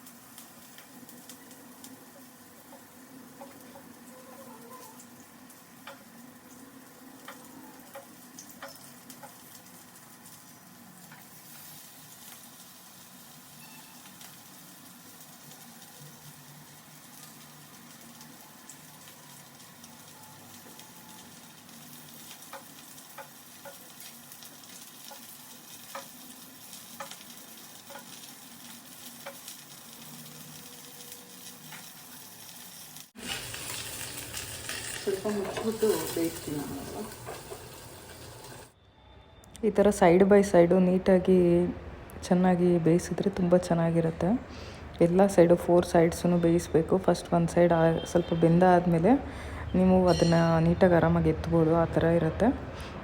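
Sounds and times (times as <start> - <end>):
fish sizzling in oil: 0.0 - 38.8.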